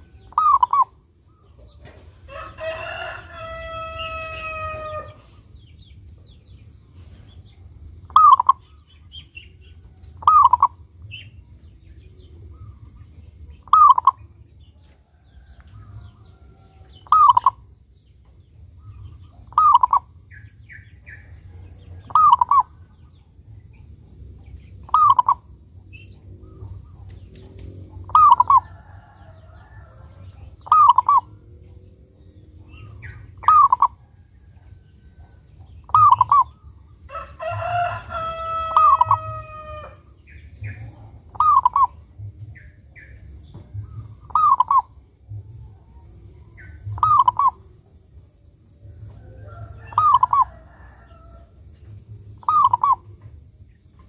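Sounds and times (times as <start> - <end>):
dove cooing: 0.0 - 1.0, 8.1 - 8.7, 10.2 - 10.8, 13.6 - 14.4, 15.8 - 17.7, 18.9 - 20.2, 21.1 - 22.8, 24.8 - 27.2, 27.9 - 31.8, 32.6 - 36.6, 37.2 - 43.1, 43.8 - 45.1, 46.0 - 47.9, 48.8 - 51.3, 52.4 - 53.3
rooster crowing: 2.2 - 5.4, 28.0 - 31.3, 33.4 - 40.4, 48.8 - 51.7.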